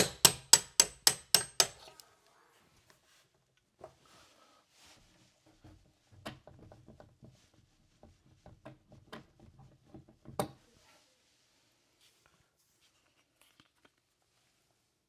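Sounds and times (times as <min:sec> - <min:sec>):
tools tapping and clicking on metal: 0:00.0 - 0:01.9.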